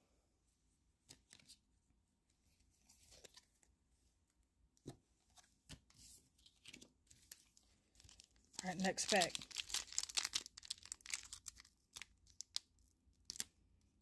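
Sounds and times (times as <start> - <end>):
cards and wrappers rustling: 5.3 - 13.5.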